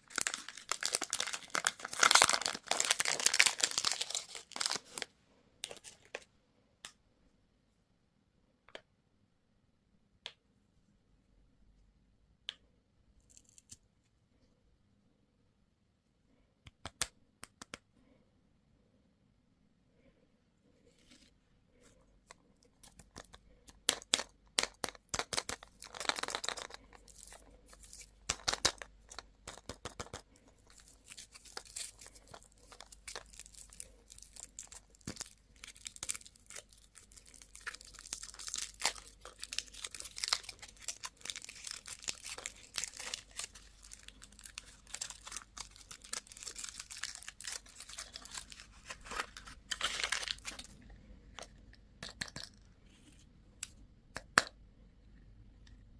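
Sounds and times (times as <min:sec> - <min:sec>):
candy wrapper crinkling: 0:00.0 - 0:06.3, 0:22.6 - 0:50.8.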